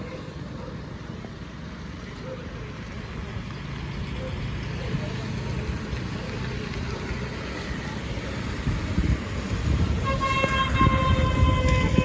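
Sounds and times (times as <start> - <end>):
traffic and engine rumble: 0.0 - 12.0
vehicle horn: 10.0 - 12.0.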